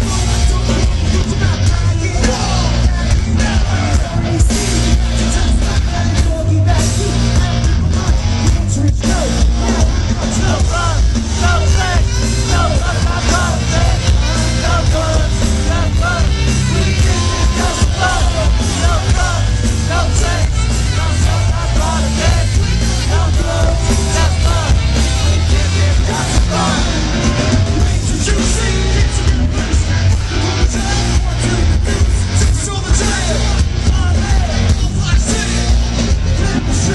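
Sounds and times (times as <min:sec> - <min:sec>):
live rap rock band: 0:00.0 - 0:36.9
voices yelling: 0:09.6 - 0:28.0.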